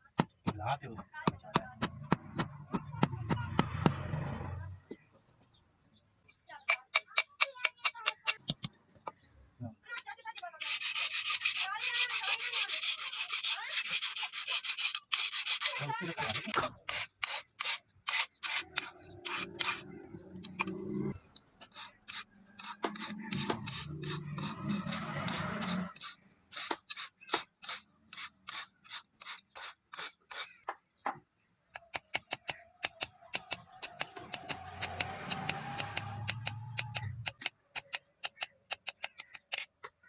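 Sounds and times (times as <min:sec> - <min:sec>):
hand file rasping on steel: 0:10.4 - 0:20.7, 0:21.6 - 0:30.6, 0:31.8 - 0:39.7.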